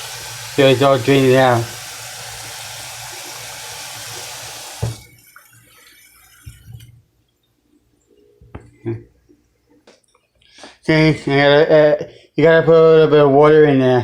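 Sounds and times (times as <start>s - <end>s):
kitchen tap running: 0.0s - 7.0s
tap shutting off with knock: 4.6s - 5.1s.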